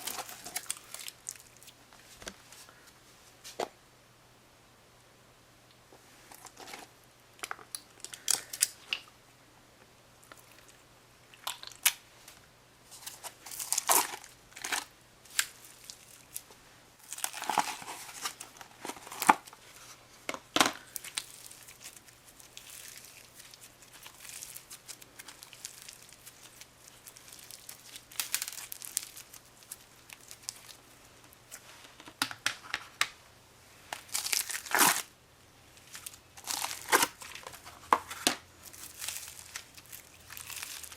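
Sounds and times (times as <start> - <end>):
crunchy slime crackling: 0.0 - 1.8, 7.4 - 9.0, 12.9 - 19.6, 20.6 - 30.9, 34.0 - 35.1, 35.7 - 40.9.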